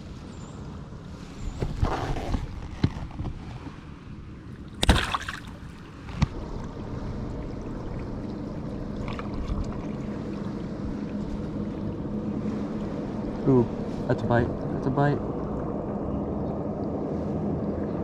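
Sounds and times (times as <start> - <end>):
water swishing past hull: 0.0 - 18.0
water splashing: 4.4 - 14.7
electric trolling motor humming: 5.4 - 16.8.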